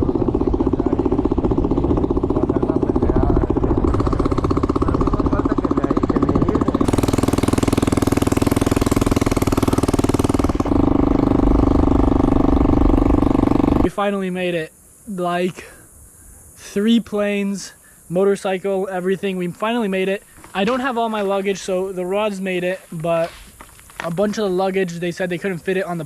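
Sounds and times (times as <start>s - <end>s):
motorcycle engine running: 0.0s - 14.0s
steady hiss: 13.8s - 26.0s.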